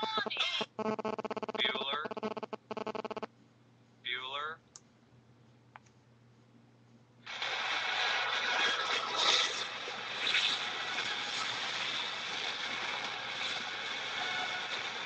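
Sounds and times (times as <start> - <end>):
phone ringtone mechanical noise: 0.0 - 3.3.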